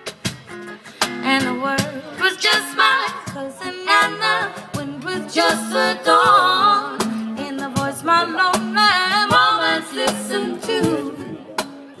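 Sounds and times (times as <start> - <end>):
female vocal trio singing: 2.2 - 11.4.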